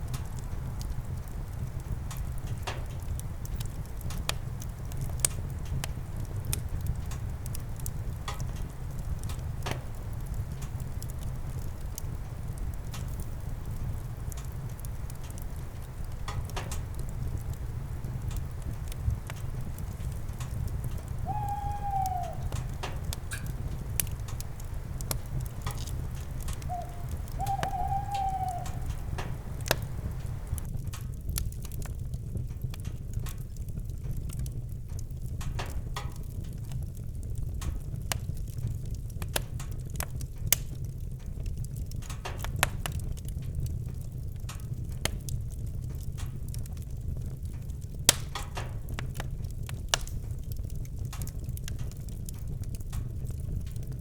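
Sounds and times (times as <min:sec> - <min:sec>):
campfire crackling and popping: 0:00.0 - 0:54.0
low rumble of flames: 0:00.0 - 0:54.0
owl hooting: 0:20.8 - 0:30.6.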